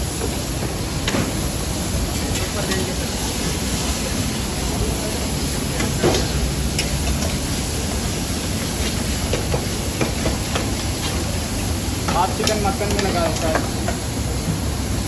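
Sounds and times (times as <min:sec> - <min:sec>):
gas burner roaring: 0:00.0 - 0:15.0.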